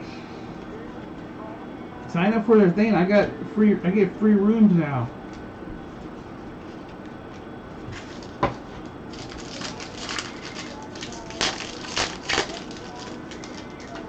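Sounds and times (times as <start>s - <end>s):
packaging crinkling and tearing: 9.1s - 14.0s.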